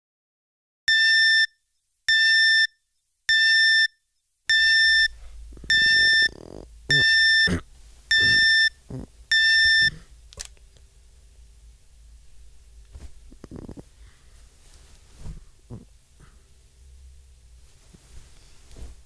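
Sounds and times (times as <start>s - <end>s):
alarm clock beeping: 0.9s - 1.5s, 2.1s - 7.5s, 8.1s - 9.9s.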